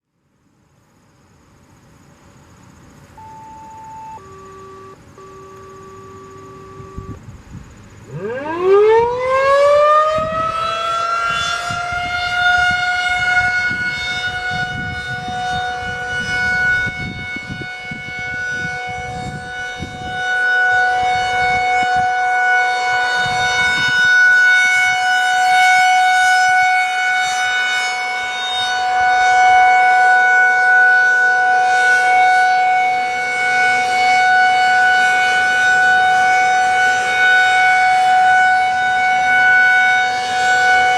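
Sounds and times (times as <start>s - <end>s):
outdoor warning siren: 3.0s - 40.9s.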